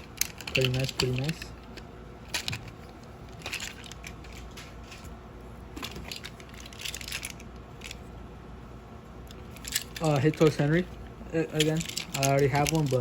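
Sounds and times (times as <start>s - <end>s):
plastic packaging crinkling: 11.6s - 13.0s.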